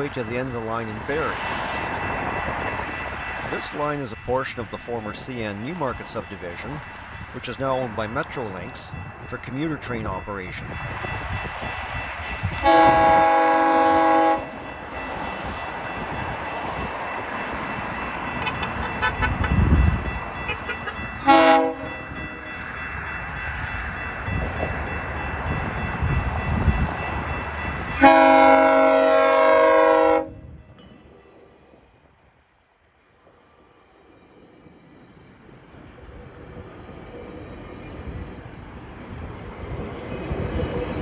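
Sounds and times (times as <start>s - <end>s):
train rumble: 0.0s - 32.4s, 33.2s - 41.0s
train horn blasts: 12.6s - 14.6s, 18.4s - 19.8s, 20.4s - 22.0s, 27.9s - 30.5s.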